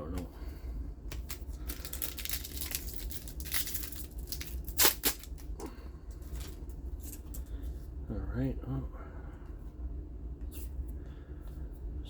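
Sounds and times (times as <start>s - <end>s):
foil wrapper crinkling and tearing: 1.2s - 5.5s.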